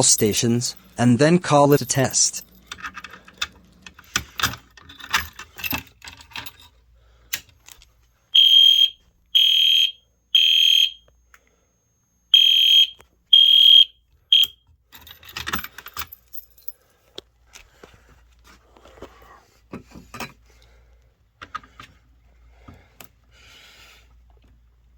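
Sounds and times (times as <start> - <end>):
key and lock rattling: 1.7 - 6.8, 14.9 - 16.8
fire alarm horn blasts: 8.3 - 11.1, 12.2 - 14.6.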